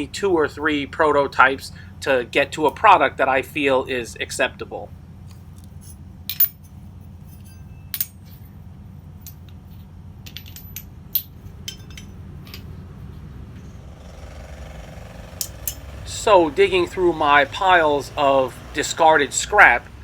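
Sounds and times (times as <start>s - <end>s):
steady low hum: 0.0s - 20.0s
scrap steel clinking: 5.2s - 13.4s, 15.4s - 16.4s.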